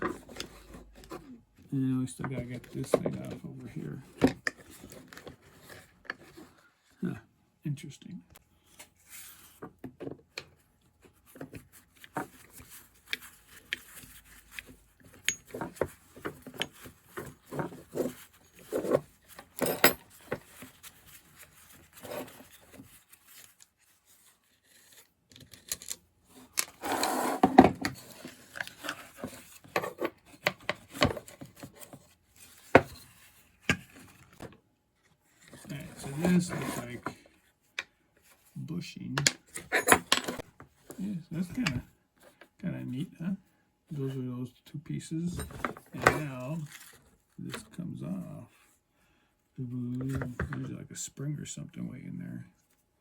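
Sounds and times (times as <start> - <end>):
rubbing and clatter: 11.1 - 34.5.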